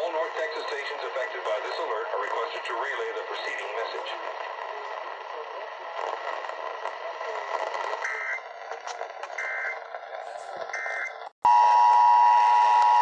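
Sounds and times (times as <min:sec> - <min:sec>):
radio hiss: 0:00.0 - 0:10.9
two-tone attention signal: 0:10.7 - 0:13.0.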